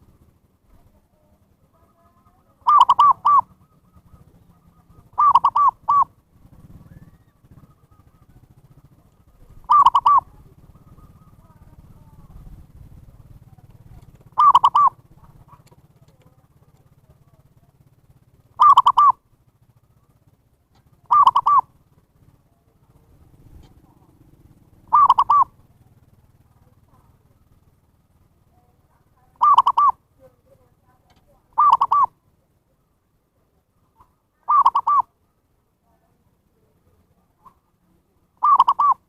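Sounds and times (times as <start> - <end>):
dove cooing: 0.0 - 32.4, 33.7 - 35.3, 36.5 - 39.0
faint low hum: 0.0 - 39.0.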